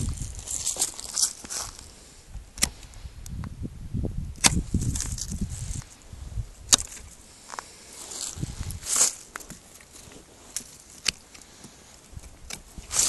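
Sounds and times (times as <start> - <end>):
low rumbling: 1.7 - 9.0
pruning shears snipping: 2.5 - 3.0, 4.4 - 5.9, 6.7 - 7.2, 8.8 - 13.0.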